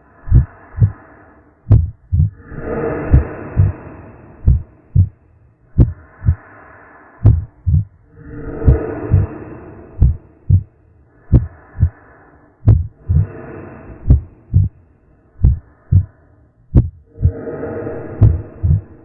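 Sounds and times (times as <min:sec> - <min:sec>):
humming creaking drone: 0:00.0 - 0:06.5, 0:07.2 - 0:19.0
heartbeat thumps: 0:00.3 - 0:01.0, 0:01.7 - 0:02.4, 0:03.0 - 0:03.8, 0:04.4 - 0:06.4, 0:07.2 - 0:08.0, 0:08.6 - 0:09.4, 0:10.0 - 0:10.7, 0:11.3 - 0:12.0, 0:12.6 - 0:13.4, 0:14.0 - 0:14.8, 0:15.4 - 0:16.1, 0:16.7 - 0:17.4, 0:18.0 - 0:19.0.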